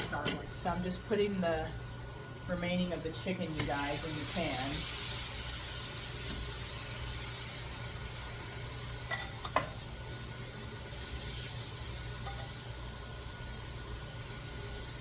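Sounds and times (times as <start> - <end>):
chicken sizzling in a frying pan: 0.5 - 15.0.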